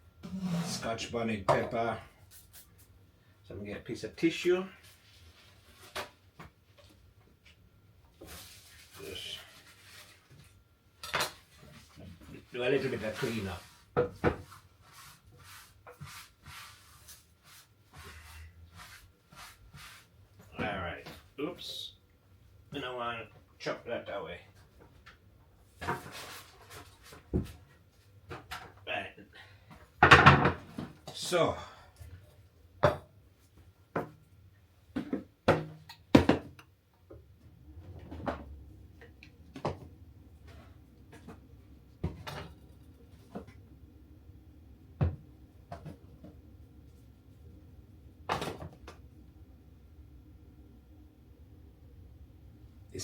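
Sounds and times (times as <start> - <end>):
paper towel wiping surface: 11.8 - 20.2
kitchen items knocking and clunking: 30.0 - 31.0, 34.9 - 36.6.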